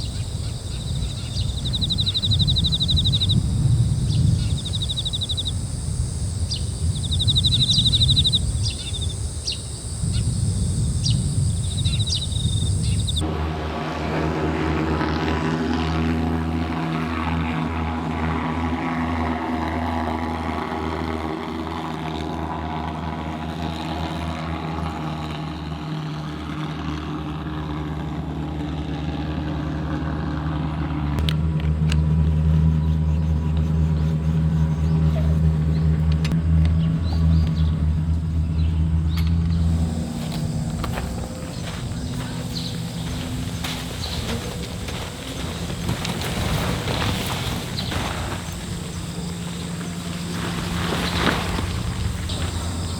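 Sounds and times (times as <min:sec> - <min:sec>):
small birds chirping: 0:00.0 - 0:13.3, 0:31.9 - 0:52.9
engine idling: 0:31.2 - 0:52.9.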